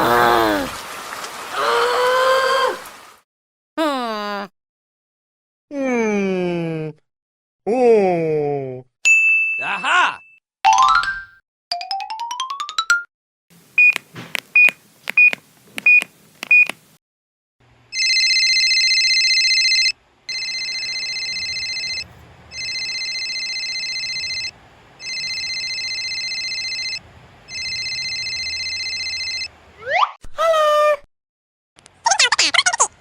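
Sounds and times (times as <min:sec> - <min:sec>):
clicks: 0:13.8 - 0:16.8
short electronic beeps: 0:14.6 - 0:16.7
electronic ringing tone: 0:18.0 - 0:29.5.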